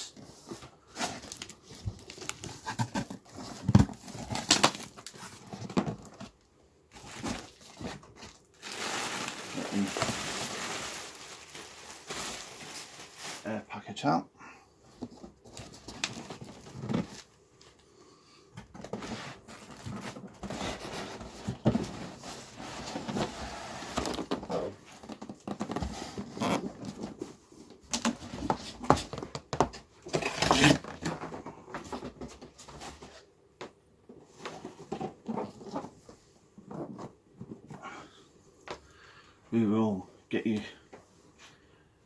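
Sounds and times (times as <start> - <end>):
packaging rustling and crinkling: 0.0 - 13.6, 15.0 - 17.8, 18.7 - 33.3.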